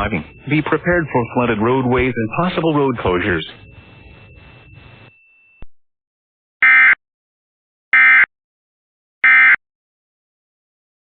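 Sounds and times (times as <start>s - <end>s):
digital data tone bursts: 0.0s - 5.6s.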